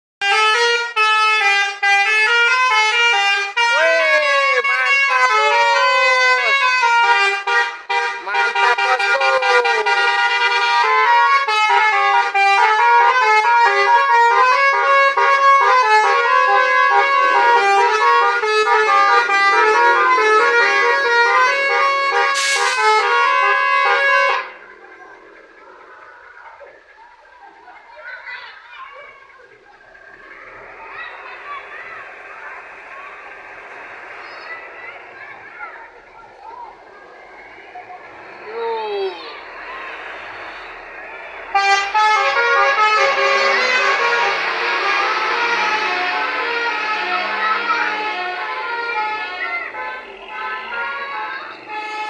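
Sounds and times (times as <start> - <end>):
musical bus horn melody: 0.2 - 24.6, 41.5 - 52.0
air hiss: 16.2 - 27.7, 29.2 - 52.0.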